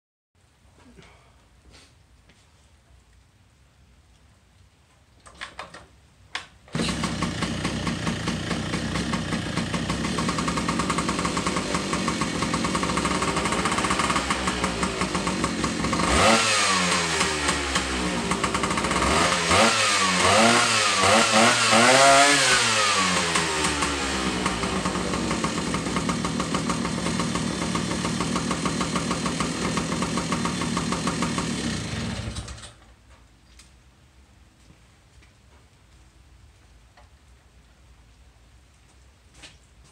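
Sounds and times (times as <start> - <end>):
motorcycle engine idling and revving: 6.7 - 32.8.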